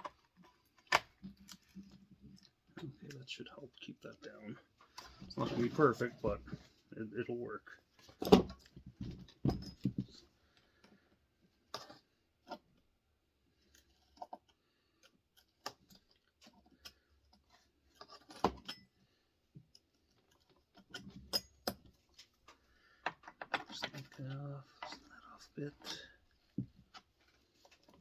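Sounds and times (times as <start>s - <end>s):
clicks of metal tools and parts: 17.9s - 19.0s, 19.8s - 25.2s.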